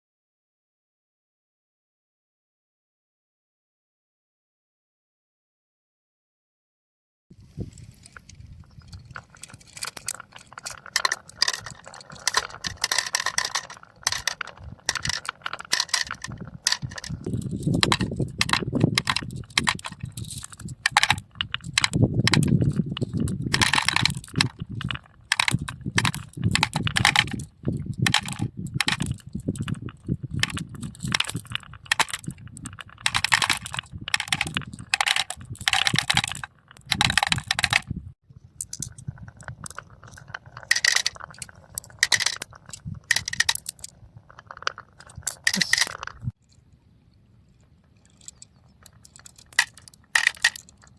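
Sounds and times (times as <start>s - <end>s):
marbles rolling on track: 8.7s - 37.9s, 38.6s - 46.4s, 48.1s - 50.9s
marbles clicking and clacking: 8.9s - 37.9s, 38.6s - 46.4s, 48.1s - 50.9s.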